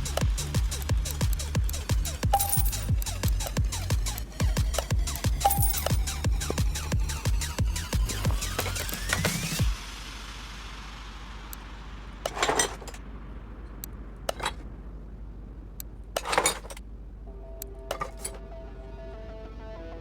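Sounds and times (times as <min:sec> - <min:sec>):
electronic music: 0:00.0 - 0:12.3, 0:17.3 - 0:20.0
low steady hum: 0:00.0 - 0:20.0
light clinks: 0:02.0 - 0:03.6, 0:04.8 - 0:06.6.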